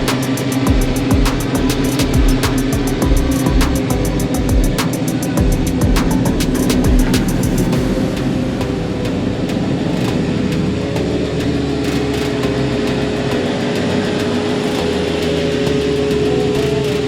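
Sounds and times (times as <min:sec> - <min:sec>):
vehicle engine running: 0:00.0 - 0:11.4
steady tone: 0:00.0 - 0:17.0.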